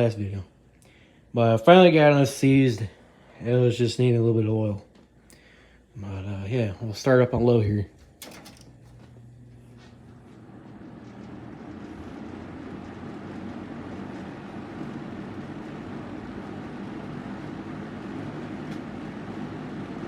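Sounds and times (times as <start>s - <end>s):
box fan air rushing: 0.0s - 20.0s
low motor hum: 6.3s - 20.0s.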